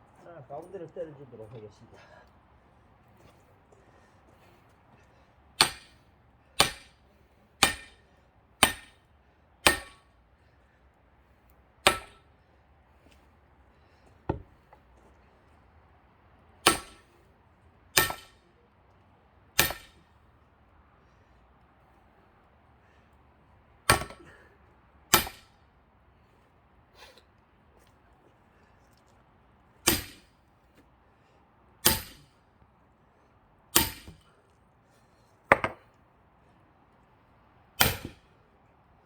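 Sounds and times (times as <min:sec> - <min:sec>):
hammer striking axe head: 0:05.6 - 0:06.0, 0:06.6 - 0:06.9, 0:07.6 - 0:08.0, 0:08.6 - 0:09.0, 0:09.6 - 0:10.0, 0:11.8 - 0:12.2, 0:16.7 - 0:17.0, 0:18.0 - 0:18.4, 0:19.6 - 0:20.0, 0:23.9 - 0:24.2, 0:25.1 - 0:25.4, 0:29.9 - 0:30.2, 0:31.8 - 0:32.2, 0:33.8 - 0:34.2, 0:35.5 - 0:35.8, 0:37.8 - 0:38.2.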